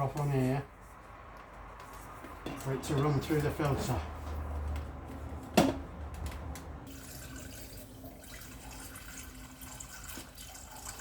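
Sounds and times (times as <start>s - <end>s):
water running into container: 6.9s - 11.0s.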